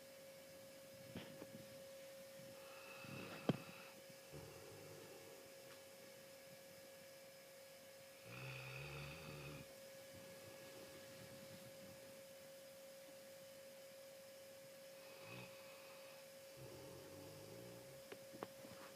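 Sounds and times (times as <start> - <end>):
steady high-pitched hum: 0.0 - 18.9
faint snoring: 2.5 - 5.5, 8.2 - 9.7, 15.0 - 18.2.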